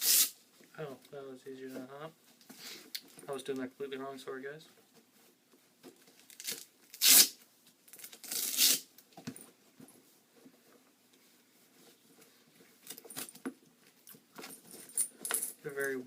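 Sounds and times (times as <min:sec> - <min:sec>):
hook-and-loop straps ripping: 0:06.2 - 0:08.9.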